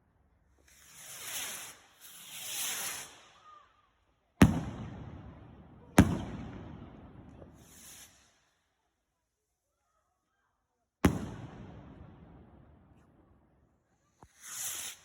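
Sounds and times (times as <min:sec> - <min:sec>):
firework whoosh: 0:00.6 - 0:03.5, 0:06.0 - 0:08.5, 0:14.2 - 0:15.0
short hiss: 0:00.6 - 0:03.5, 0:07.6 - 0:08.6, 0:14.1 - 0:15.0
firework bangs: 0:04.4 - 0:08.4, 0:11.0 - 0:13.2.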